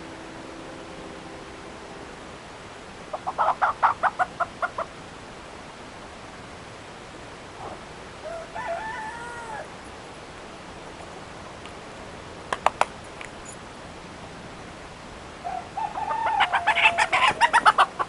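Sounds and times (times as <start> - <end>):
rooster crowing: 8.2 - 9.8, 15.4 - 18.0
sharp clicks: 12.5 - 13.6.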